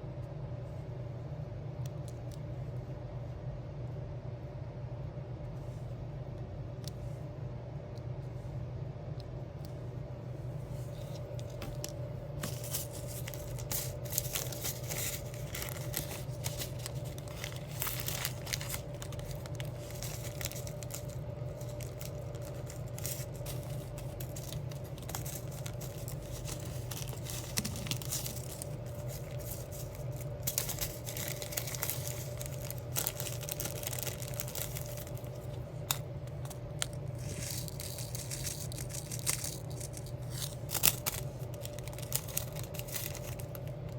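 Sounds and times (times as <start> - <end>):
low hum: 9.2 - 43.9
sticker sheets crinkling: 10.7 - 43.9.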